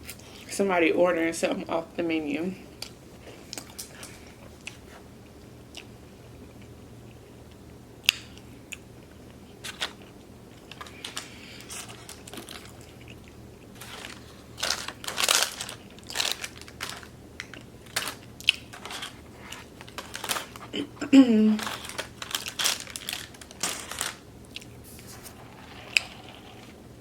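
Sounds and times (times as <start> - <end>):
chewing and crunching mouth sounds: 2.8 - 20.8, 21.6 - 24.9.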